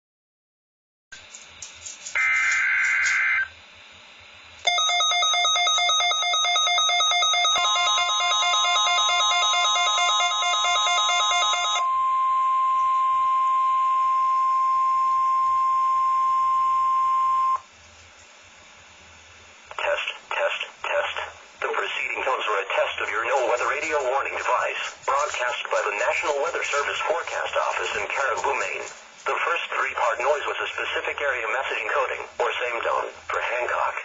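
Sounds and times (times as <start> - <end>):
screechy digital data burst: 2.2 - 3.5.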